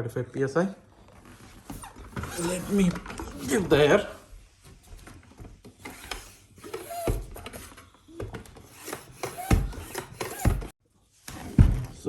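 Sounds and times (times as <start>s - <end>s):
hand pump thumps: 5.6s - 10.8s.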